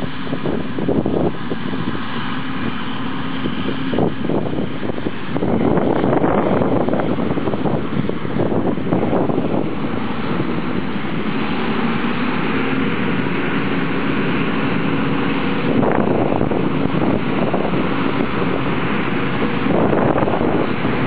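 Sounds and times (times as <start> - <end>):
combine harvester drone: 0.0 - 21.0
wind buffeting microphone: 0.0 - 21.0.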